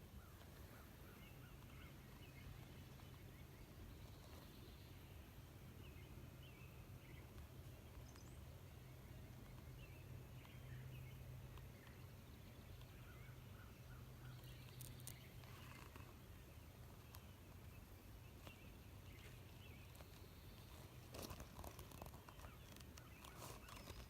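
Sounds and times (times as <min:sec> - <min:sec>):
faint bird chirps: 0:05.8 - 0:24.0.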